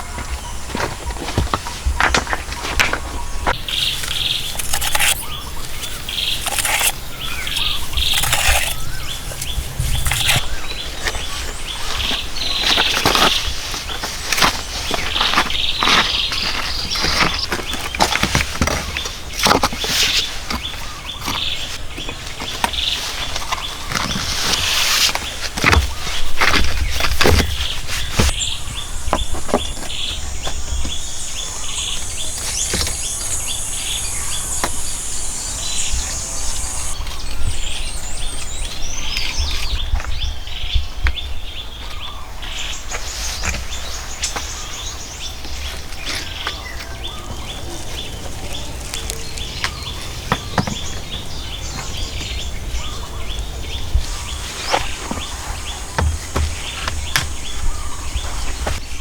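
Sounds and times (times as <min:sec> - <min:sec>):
birds chirping: 0:00.0 - 0:59.0
high insect drone: 0:03.5 - 0:11.2, 0:28.2 - 0:39.4.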